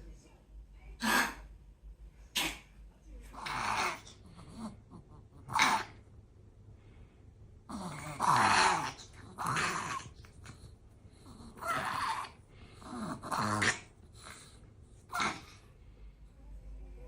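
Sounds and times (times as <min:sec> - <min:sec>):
dog reverse sneezing: 0:02.4 - 0:02.7.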